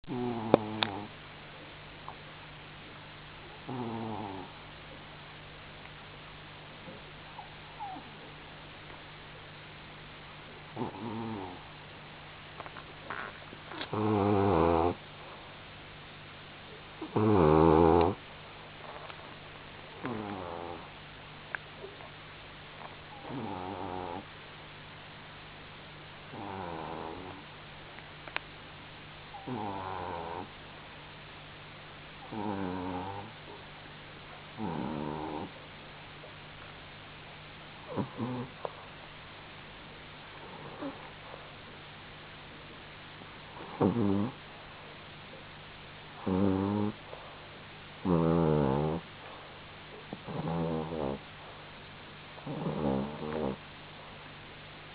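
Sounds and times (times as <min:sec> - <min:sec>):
pet snoring: 0:00.0 - 0:01.2, 0:03.6 - 0:04.6, 0:06.8 - 0:08.2, 0:10.7 - 0:11.7, 0:13.1 - 0:15.0, 0:17.0 - 0:18.2, 0:19.9 - 0:20.9, 0:23.1 - 0:24.3, 0:26.3 - 0:27.5, 0:29.3 - 0:30.6, 0:32.2 - 0:33.6, 0:34.6 - 0:35.6, 0:37.8 - 0:38.8, 0:40.4 - 0:41.4, 0:43.6 - 0:44.4, 0:46.2 - 0:47.3, 0:48.0 - 0:49.5, 0:50.1 - 0:51.3, 0:52.4 - 0:53.6.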